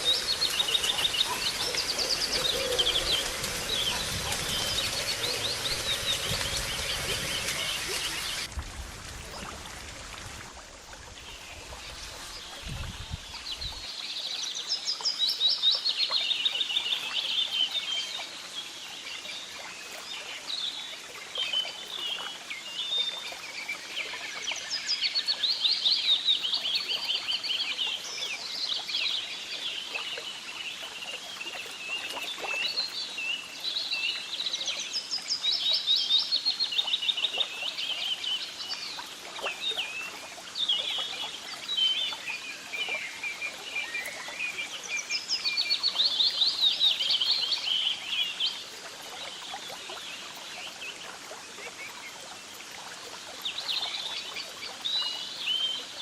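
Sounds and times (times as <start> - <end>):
birds chirping and trilling: 0.0 - 8.5.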